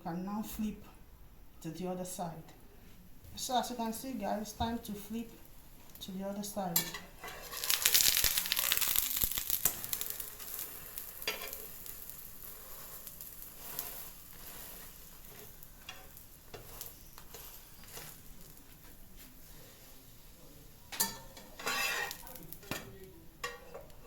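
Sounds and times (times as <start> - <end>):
pancake batter sizzling in pan: 3.5 - 24.0
spatula tapping pan: 9.4 - 18.6.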